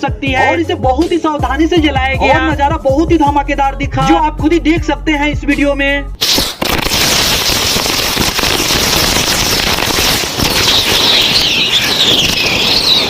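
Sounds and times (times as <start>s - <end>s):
firecrackers crackling and popping: 6.2s - 13.0s
wavering high whistle: 10.8s - 13.0s.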